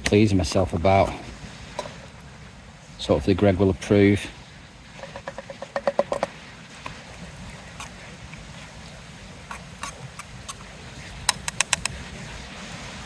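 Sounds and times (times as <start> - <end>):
campfire crackling: 4.0 - 12.6.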